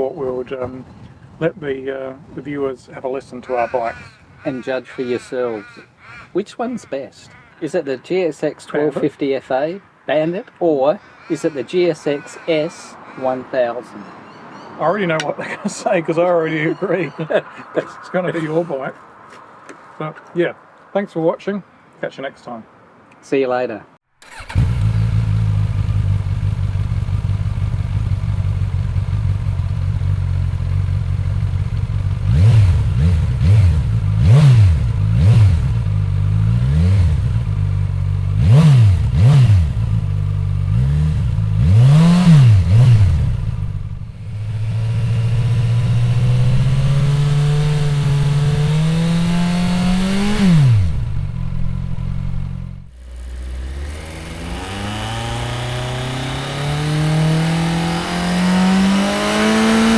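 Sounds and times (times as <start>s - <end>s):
motorcycle engine idling and revving: 24.2s - 59.9s.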